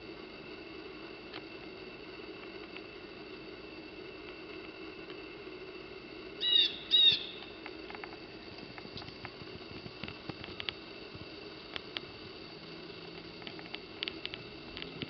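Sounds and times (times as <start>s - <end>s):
faint background hum: 0.0s - 15.0s
woodpecker harsh calls: 6.4s - 7.5s.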